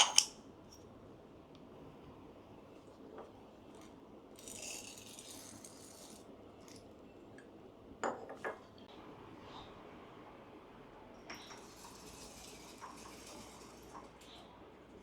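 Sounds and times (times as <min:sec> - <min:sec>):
coffee grinder parts rattling: 0:04.4 - 0:06.2.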